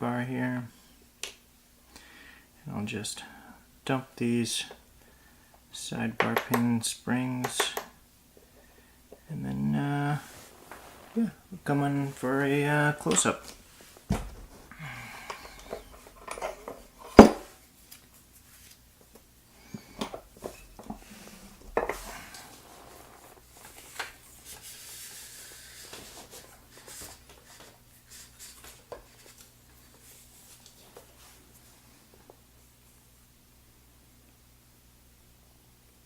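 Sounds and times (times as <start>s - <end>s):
metal parts clicking and clinking: 15.6s - 17.3s.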